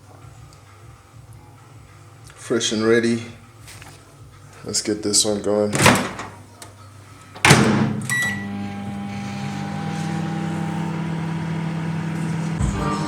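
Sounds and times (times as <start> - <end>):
microwave oven humming: 7.4 - 13.0.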